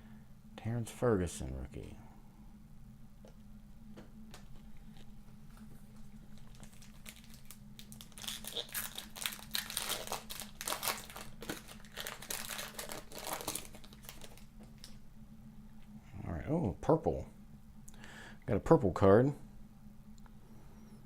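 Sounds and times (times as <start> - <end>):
plastic wrapper crinkling and tearing: 6.2 - 15.0.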